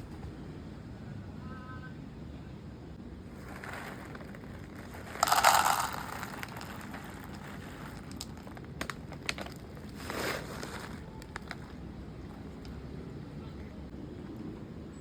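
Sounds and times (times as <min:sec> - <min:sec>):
loud crinkling rustle: 0:03.3 - 0:12.8.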